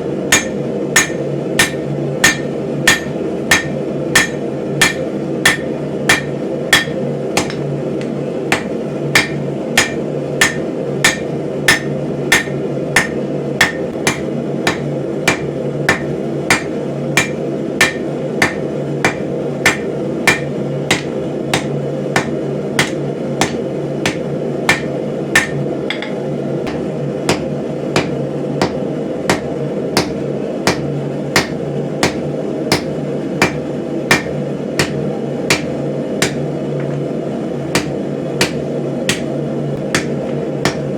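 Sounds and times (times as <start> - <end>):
steady low hum: 0.0 - 40.9
hammer striking steel on anvil: 0.3 - 36.4, 37.8 - 40.9.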